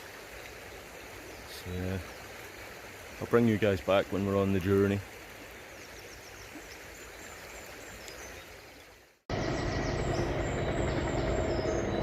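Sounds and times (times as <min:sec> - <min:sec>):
birds chirping: 0:05.5 - 0:12.0
outdoor noise: 0:09.0 - 0:12.0.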